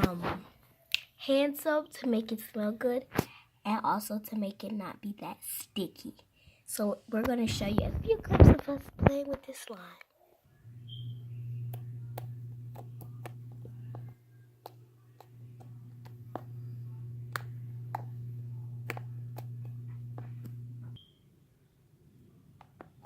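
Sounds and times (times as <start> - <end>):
steady low hum: 10.6 - 21.0
slime popping and clicking: 18.8 - 20.5.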